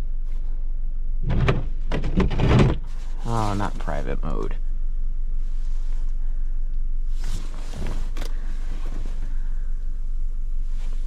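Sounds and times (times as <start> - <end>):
vehicle engine idling: 2.8 - 11.0.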